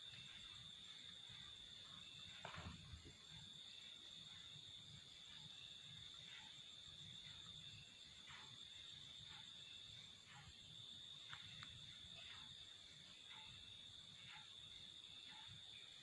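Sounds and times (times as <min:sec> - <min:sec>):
high-pitched insect drone: 0:00.0 - 0:16.0.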